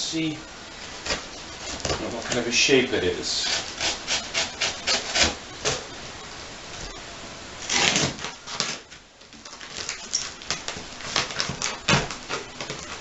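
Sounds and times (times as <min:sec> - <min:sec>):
rasping cardboard or tape: 0:03.4 - 0:05.8, 0:07.6 - 0:08.8, 0:09.6 - 0:13.0.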